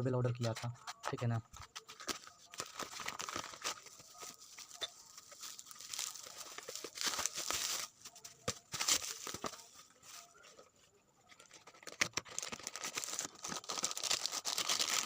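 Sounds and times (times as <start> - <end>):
packaging torn and crinkled: 1.6 - 9.6, 11.4 - 15.0.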